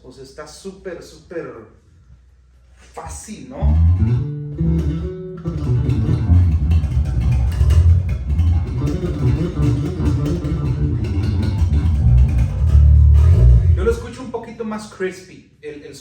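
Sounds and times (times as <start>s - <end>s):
electric bass playing: 3.0s - 14.1s.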